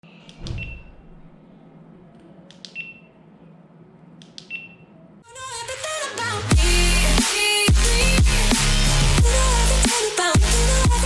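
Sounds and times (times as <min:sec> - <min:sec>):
electronic dance music with heavy bass: 0:06.5 - 0:11.0.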